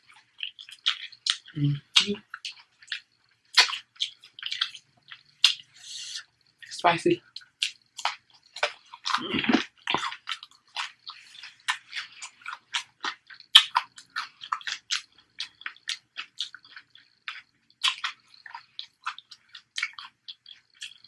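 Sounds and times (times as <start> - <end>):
person chewing: 0.0 - 21.0
wet mouth smacks and clicks: 2.4 - 5.6.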